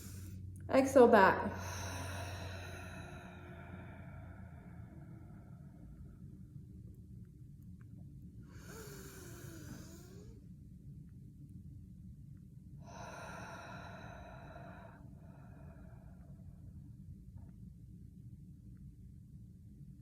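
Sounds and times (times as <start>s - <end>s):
faint steady low hum: 0.0s - 20.0s.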